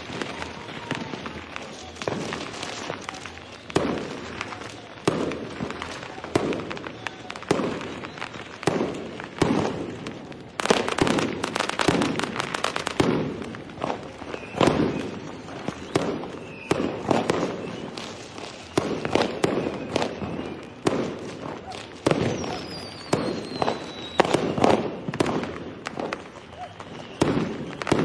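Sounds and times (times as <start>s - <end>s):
crackling pops: 0.0s - 28.0s
firecrackers banging: 0.0s - 28.0s.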